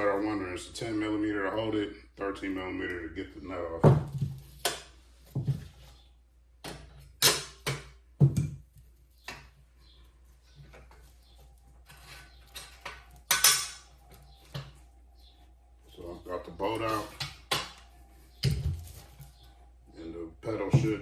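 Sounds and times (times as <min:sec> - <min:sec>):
hand tools clinking on metal: 0:11.9 - 0:14.6.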